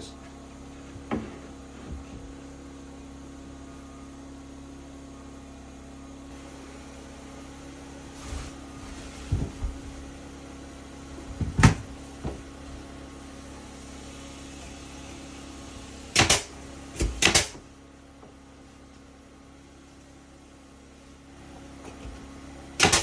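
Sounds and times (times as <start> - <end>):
steady low hum: 0.0 - 22.8
sharp knocks and thumps: 0.9 - 2.4, 11.1 - 12.7.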